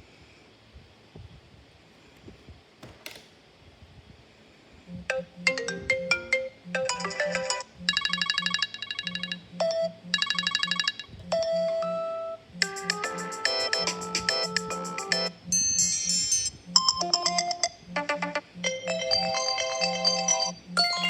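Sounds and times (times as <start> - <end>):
low pulsing buzz: 3.9 - 19.4, 20.0 - 21.0
smartphone ringtone melodies: 5.1 - 21.0.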